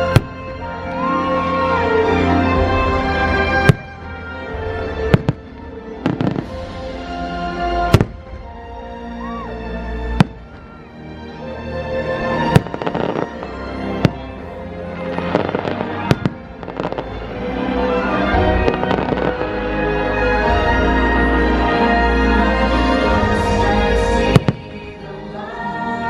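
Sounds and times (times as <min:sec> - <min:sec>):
fireworks bangs and crackles: 0:00.0 - 0:07.1, 0:07.8 - 0:08.6, 0:10.1 - 0:10.9, 0:12.2 - 0:21.2, 0:23.0 - 0:25.0
orchestral music on loudspeakers: 0:00.0 - 0:26.0.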